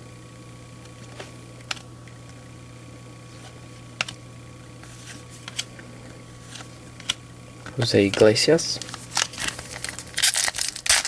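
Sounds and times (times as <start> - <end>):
steady hum: 0.0 - 11.0
trading cards clicking and tapping: 6.5 - 10.1.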